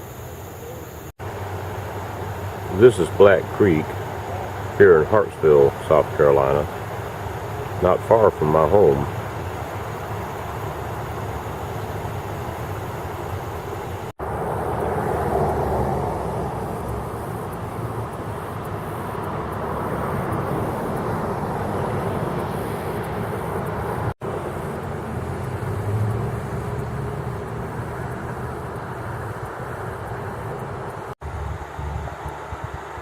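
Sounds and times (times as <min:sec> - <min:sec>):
car road noise rumbling: 0:00.0 - 0:33.0.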